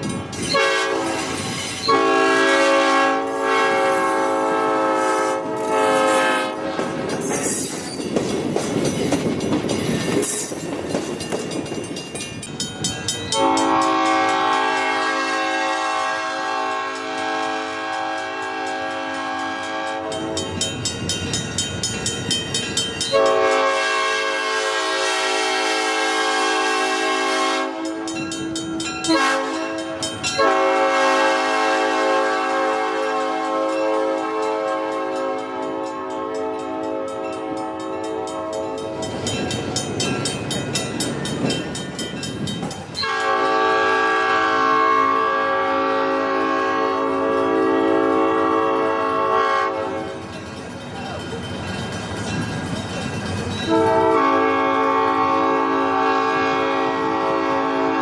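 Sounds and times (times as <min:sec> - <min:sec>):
train air horn blasts: 0:00.5 - 0:07.1, 0:13.4 - 0:20.6, 0:23.1 - 0:39.2, 0:43.0 - 0:50.2, 0:53.6 - 0:58.0.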